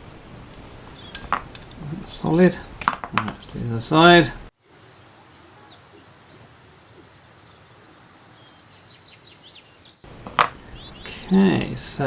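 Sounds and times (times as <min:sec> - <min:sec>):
faint background hiss: 0:00.0 - 0:12.0
bird chirps: 0:00.9 - 0:02.2, 0:04.8 - 0:11.4.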